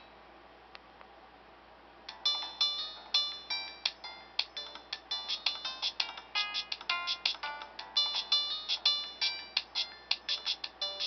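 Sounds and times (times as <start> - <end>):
polyphonic phone ringtone: 2.2 - 11.0.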